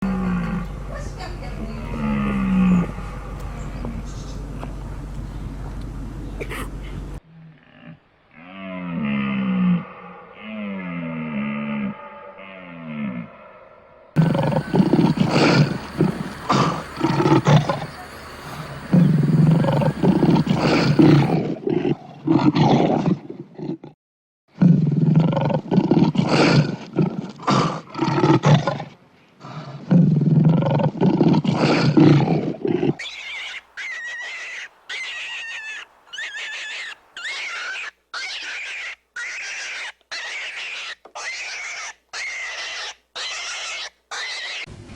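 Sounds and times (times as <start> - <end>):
big cat roaring and growling: 0.0 - 0.8, 1.8 - 4.1, 7.4 - 33.0
small animal squeaking: 14.2 - 21.3, 33.0 - 44.7.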